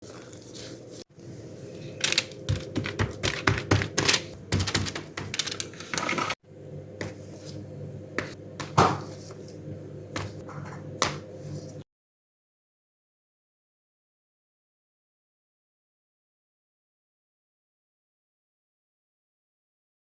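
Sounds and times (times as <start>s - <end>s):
steady low hum: 0.2s - 11.8s
kitchen taps and knocks: 2.5s - 5.4s.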